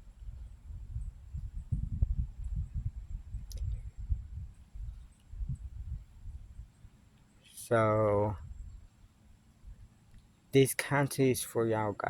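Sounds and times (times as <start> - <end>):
wind buffeting microphone: 0.0 - 7.0, 7.6 - 10.0.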